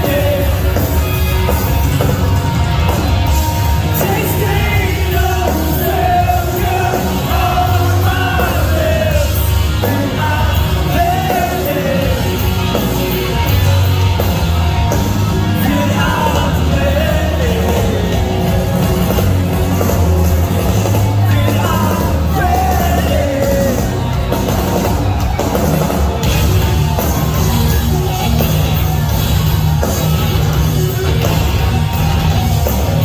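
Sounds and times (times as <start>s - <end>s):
vocals: 0.0s - 2.1s, 3.6s - 13.4s, 15.1s - 24.8s
metalcore band playing live: 0.0s - 33.0s.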